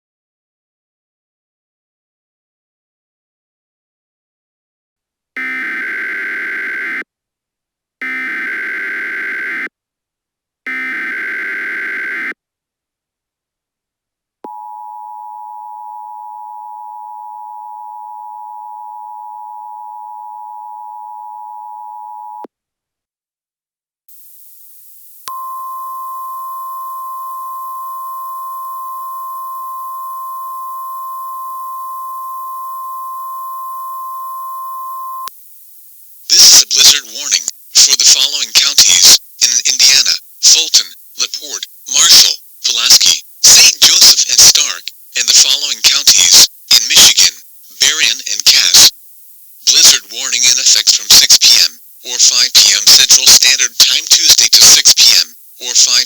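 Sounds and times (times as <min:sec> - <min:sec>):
single-pitch warning tone: 0:10.7 - 0:12.4, 0:14.5 - 0:22.5, 0:25.3 - 0:35.3
hiss: 0:24.1 - 0:25.3
two-tone attention signal: 0:25.3 - 0:35.3
warbling digital data bursts: 0:34.8 - 0:56.0.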